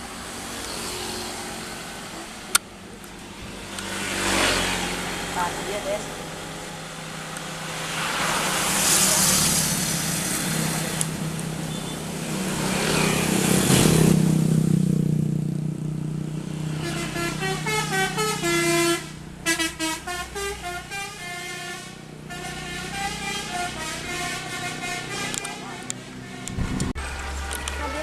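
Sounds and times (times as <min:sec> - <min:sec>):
bus engine running: 0:04.9 - 0:28.0
bus horn playing melody: 0:16.7 - 0:28.0.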